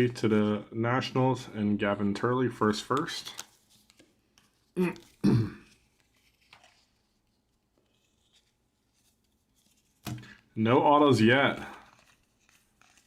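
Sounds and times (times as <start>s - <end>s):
man clearing his throat: 4.8s - 5.8s.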